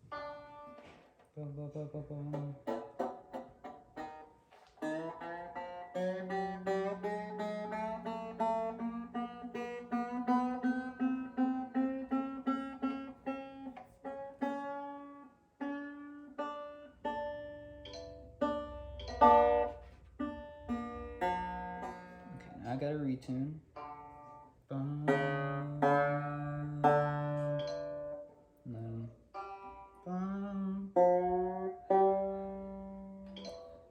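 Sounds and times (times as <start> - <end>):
banjo string plucked: 0.0 - 33.9
low handling rumble: 17.3 - 23.4.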